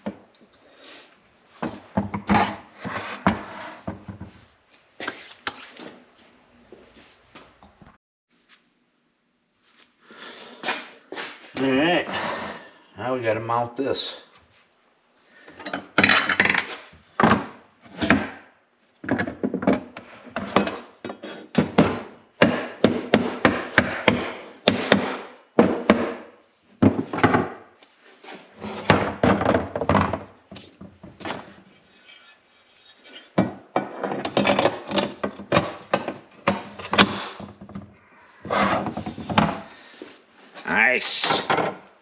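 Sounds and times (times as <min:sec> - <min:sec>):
tools knocking and clattering: 0:01.6 - 0:04.4, 0:15.5 - 0:18.4, 0:19.0 - 0:27.7, 0:28.6 - 0:38.0, 0:41.3 - 0:41.9.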